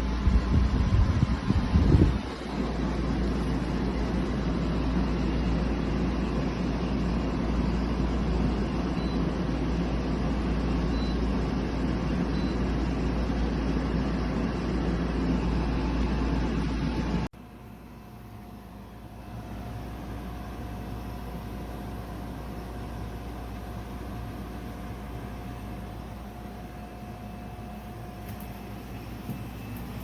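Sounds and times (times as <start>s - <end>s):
air conditioner running: 0.0s - 30.0s.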